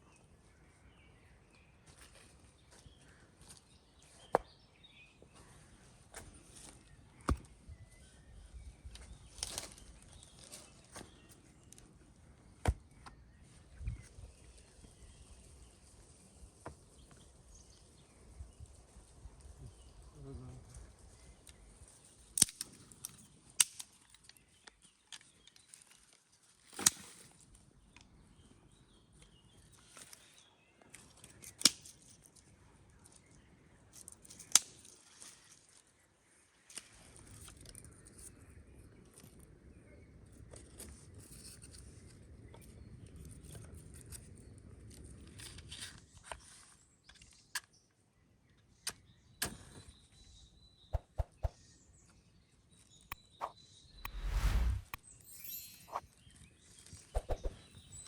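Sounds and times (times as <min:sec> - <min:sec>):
small snaps and rustles: 0:09.0 - 0:10.0, 0:22.3 - 0:27.3, 0:31.0 - 0:32.2, 0:34.0 - 0:35.4.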